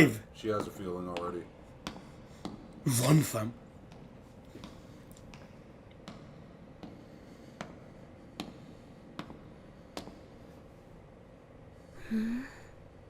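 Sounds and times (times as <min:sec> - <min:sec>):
footsteps clicking: 0:03.7 - 0:10.3.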